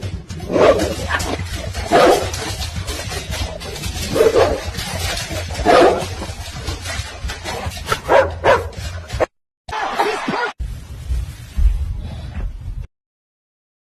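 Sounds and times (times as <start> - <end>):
dog barking: 5.6 - 6.1, 8.0 - 8.8.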